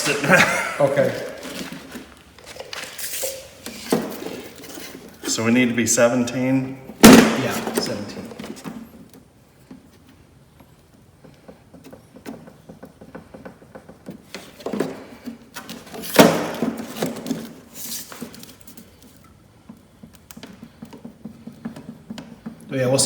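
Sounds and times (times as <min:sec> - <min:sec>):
sharp knock: 0:07.0 - 0:07.9
tapping and scraping on plexiglass: 0:11.3 - 0:23.0.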